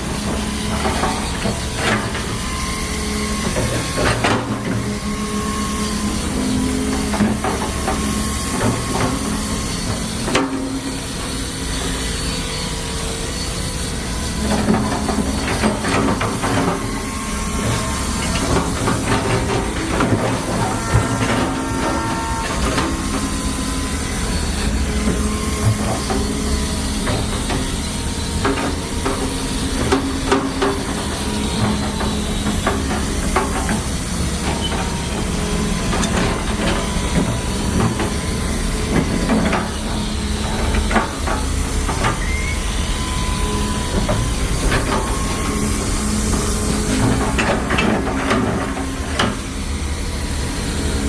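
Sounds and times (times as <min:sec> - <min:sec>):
digger machinery running: 0:00.0 - 0:51.0
knocks and clanks: 0:14.4 - 0:38.2.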